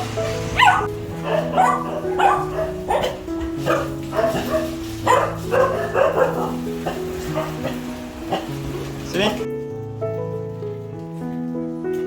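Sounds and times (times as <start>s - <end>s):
dog barking: 0.0s - 9.0s
background music with held notes: 0.0s - 12.0s.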